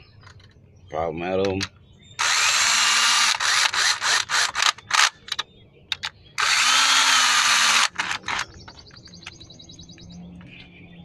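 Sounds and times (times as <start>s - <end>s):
power gun spinning bolts: 2.2s - 5.4s, 6.4s - 8.6s.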